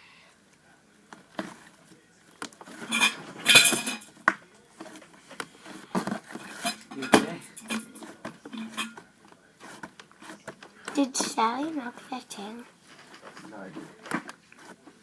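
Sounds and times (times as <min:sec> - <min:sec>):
utensil scraping a bowl: 0:02.6 - 0:04.1, 0:04.8 - 0:15.0.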